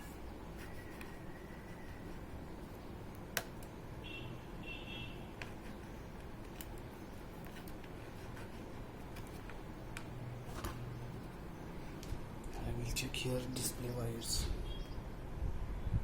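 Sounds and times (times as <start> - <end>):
steady low hum: 0.0 - 16.0
small clicks of laptop parts: 5.4 - 8.0.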